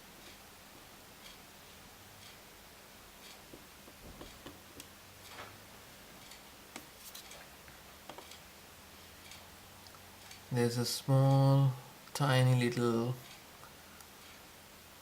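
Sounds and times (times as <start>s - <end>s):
small clicks and taps of tools: 3.2s - 5.6s, 6.2s - 8.4s.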